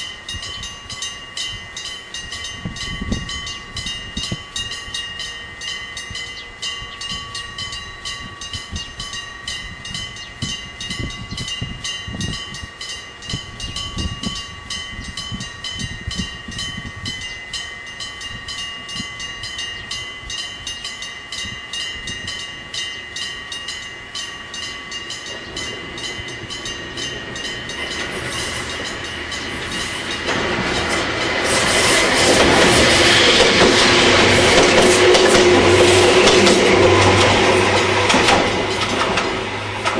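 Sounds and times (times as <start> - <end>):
level crossing bell ringing: 0.0 - 31.5
train wheels passing: 0.0 - 39.9.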